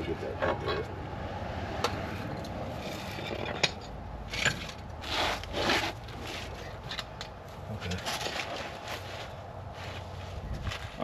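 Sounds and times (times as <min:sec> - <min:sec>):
metal parts scraping: 0:02.8 - 0:07.1.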